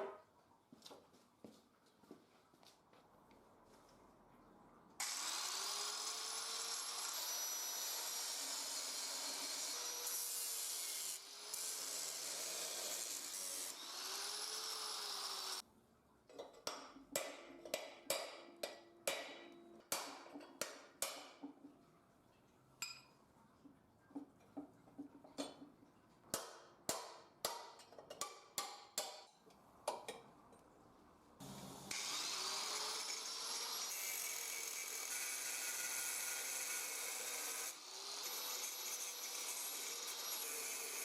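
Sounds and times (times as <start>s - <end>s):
power tool working metal: 5.0s - 15.6s, 31.4s - 41.0s.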